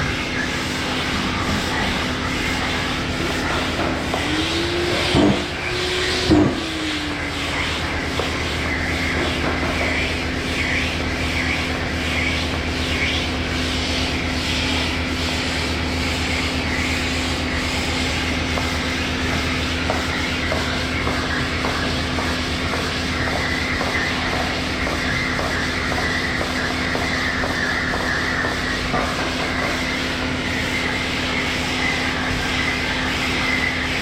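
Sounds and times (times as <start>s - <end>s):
sander pad rasping: 0.0s - 34.0s
power sander humming: 2.6s - 9.6s.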